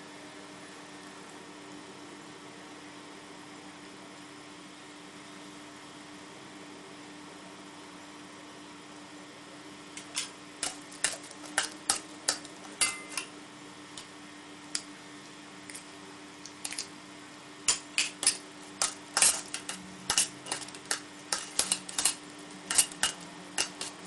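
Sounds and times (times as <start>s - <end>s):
spoon scraping against bowl: 17.7s - 24.0s.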